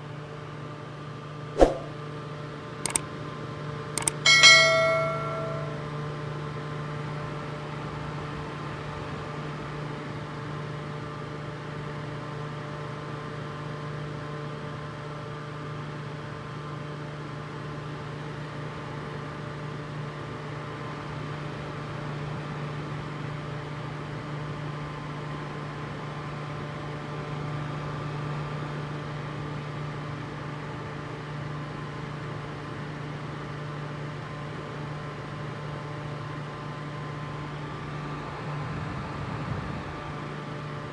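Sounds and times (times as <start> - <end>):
fan humming: 4.0 - 5.9.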